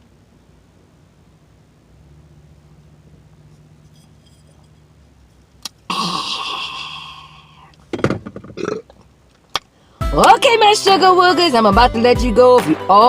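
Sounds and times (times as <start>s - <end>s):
long loud burp: 5.9s - 7.6s, 8.5s - 9.0s
short loud vocal sounds: 5.9s - 7.7s.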